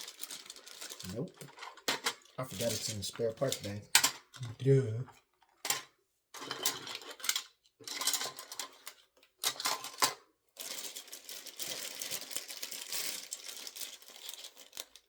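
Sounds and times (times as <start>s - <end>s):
plastic bag rustling: 0.0s - 3.8s, 9.5s - 15.0s
plastic pieces clattering: 0.0s - 4.6s, 5.6s - 15.0s.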